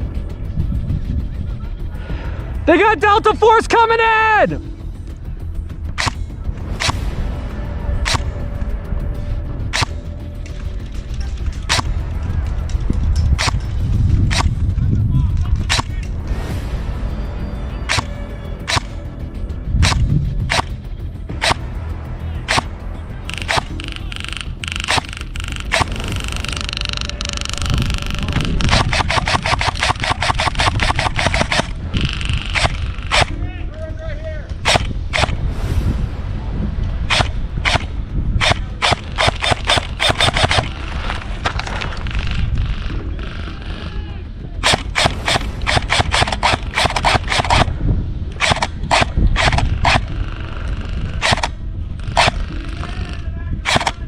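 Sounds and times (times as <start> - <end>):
low rumble: 0.0 - 3.4, 4.4 - 54.0
airsoft guns firing: 11.6 - 12.0, 17.9 - 19.0, 21.4 - 21.6, 22.5 - 22.7, 23.3 - 33.4, 34.7 - 35.4, 37.1 - 40.9, 44.6 - 47.7, 48.4 - 50.6, 51.2 - 51.6, 53.7 - 54.0.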